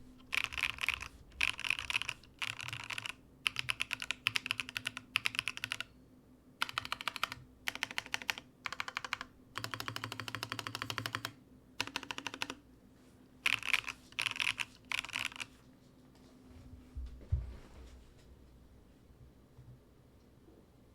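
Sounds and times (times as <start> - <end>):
mechanical keyboard typing: 0.3 - 5.9, 6.6 - 12.6, 13.4 - 15.5.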